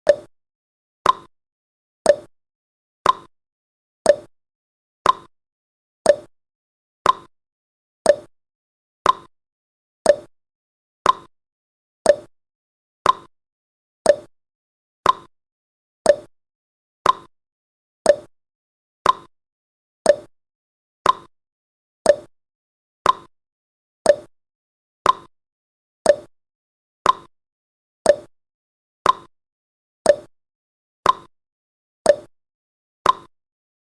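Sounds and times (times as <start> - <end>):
timer ticking: 0.0 - 0.3, 1.0 - 1.3, 2.1 - 2.3, 3.0 - 3.3, 4.1 - 4.3, 5.0 - 5.3, 6.0 - 6.3, 7.0 - 7.3, 8.1 - 8.3, 9.0 - 9.3, 10.0 - 10.3, 11.0 - 11.3, 12.0 - 12.3, 13.0 - 13.3, 14.0 - 14.3, 15.0 - 15.3, 16.0 - 16.3, 17.0 - 17.3, 18.1 - 18.3, 19.0 - 19.3, 20.1 - 20.3, 21.0 - 21.3, 22.1 - 22.3, 23.0 - 23.3, 24.1 - 24.3, 25.0 - 25.3, 26.0 - 26.3, 27.0 - 27.3, 28.1 - 28.3, 29.0 - 29.3, 30.1 - 30.3, 31.0 - 31.3, 32.1 - 32.3, 33.0 - 33.3.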